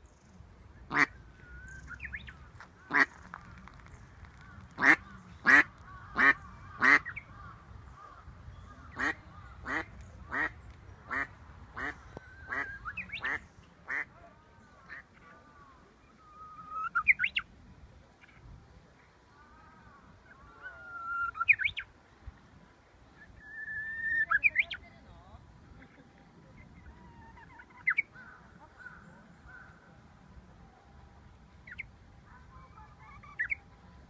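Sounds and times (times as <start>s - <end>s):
bird whistled song: 1.4s - 2.4s, 12.2s - 13.4s, 16.1s - 17.4s, 20.6s - 21.9s, 23.2s - 24.8s, 32.8s - 33.7s.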